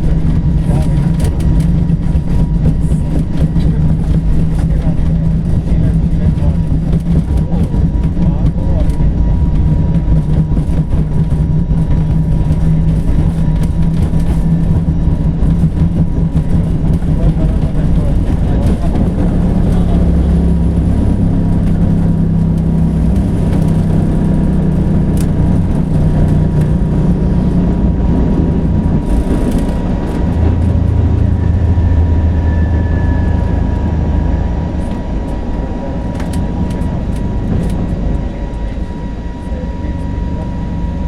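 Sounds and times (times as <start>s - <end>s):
jet engine rumble: 0.0s - 41.0s
thin steady whine: 0.0s - 41.0s.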